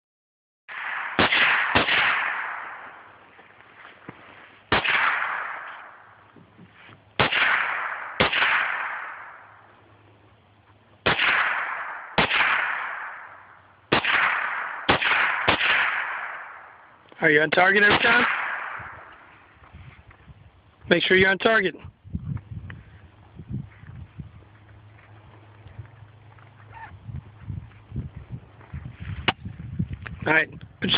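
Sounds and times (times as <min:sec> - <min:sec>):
rifle shots with echo: 0:00.7 - 0:03.3, 0:04.7 - 0:06.3, 0:07.2 - 0:09.7, 0:11.0 - 0:17.0, 0:17.6 - 0:19.3.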